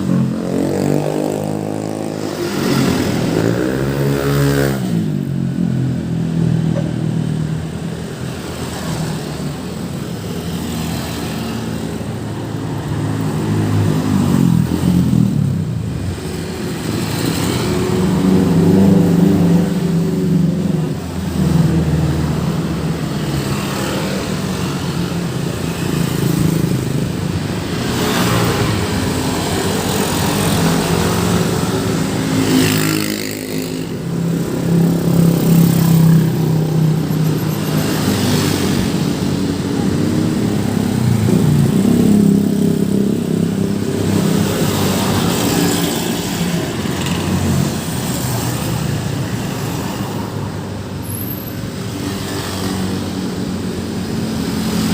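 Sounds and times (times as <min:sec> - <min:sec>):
road traffic passing: 0:00.0 - 0:54.9.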